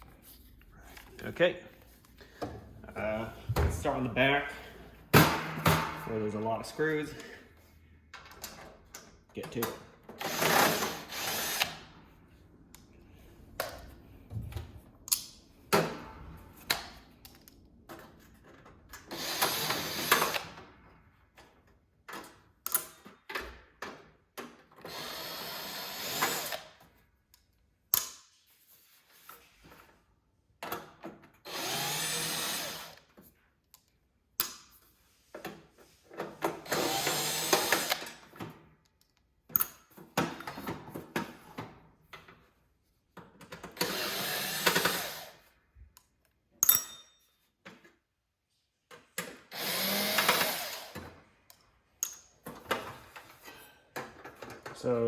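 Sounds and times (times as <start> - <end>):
power drill driver running: 10.2 - 11.9, 19.1 - 20.5, 24.8 - 26.8, 31.5 - 33.1, 36.6 - 38.2, 43.7 - 45.5, 49.5 - 51.1.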